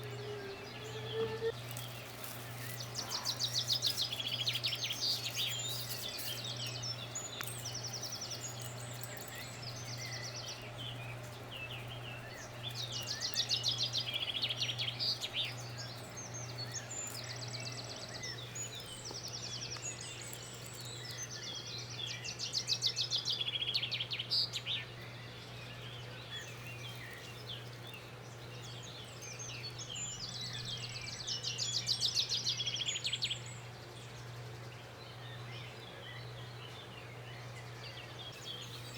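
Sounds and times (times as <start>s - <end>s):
steady low hum: 0.0s - 22.2s
birds chirping and trilling: 0.0s - 38.9s.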